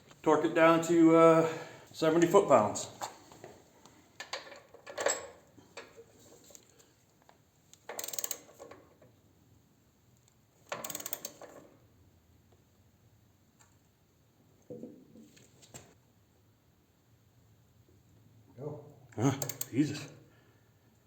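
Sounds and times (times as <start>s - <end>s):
torque wrench ratcheting: 7.9s - 8.6s, 10.7s - 11.4s, 19.3s - 19.8s.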